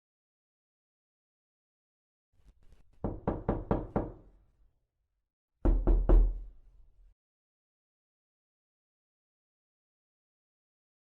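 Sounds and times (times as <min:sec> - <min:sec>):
knocking on a door: 0:03.0 - 0:04.3, 0:05.6 - 0:06.5.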